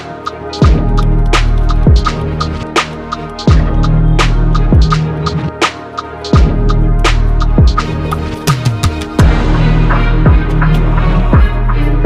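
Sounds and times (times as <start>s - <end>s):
hi-hat ticks: 0.0s - 9.3s
deep bass kicks gliding down: 9.2s - 11.8s.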